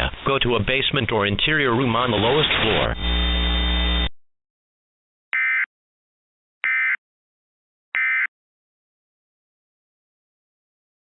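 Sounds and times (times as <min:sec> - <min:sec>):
buzzing hum: 0:02.1 - 0:04.2.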